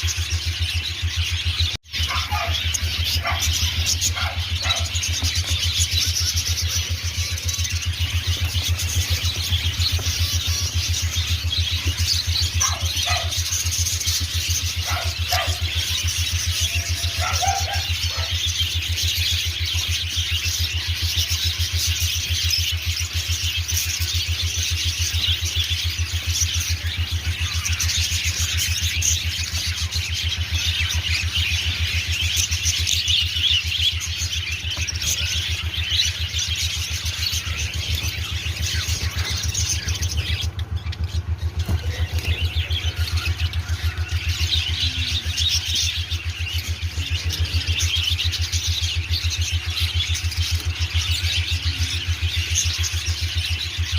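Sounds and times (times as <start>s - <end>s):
small birds chirping: 0.0s - 53.9s
steady low hum: 0.0s - 53.9s.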